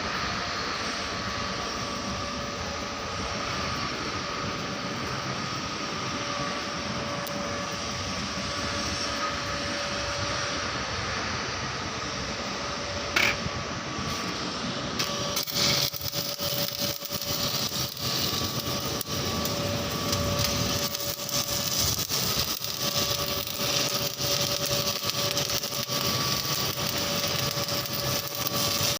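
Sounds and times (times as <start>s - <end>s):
steady machine hum: 0.0s - 28.9s
welding arc crackling: 13.1s - 28.9s.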